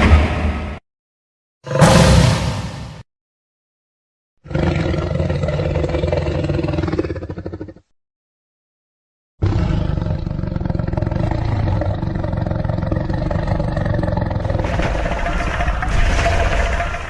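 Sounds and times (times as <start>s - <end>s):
monster growl: 9.4s - 17.0s.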